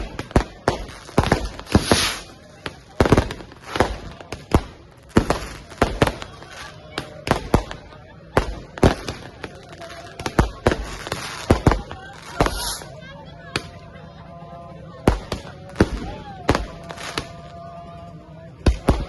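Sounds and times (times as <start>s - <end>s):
hissing crackle: 0.0s - 13.0s
fireworks bangs: 0.0s - 14.0s, 14.8s - 17.6s, 18.5s - 19.0s.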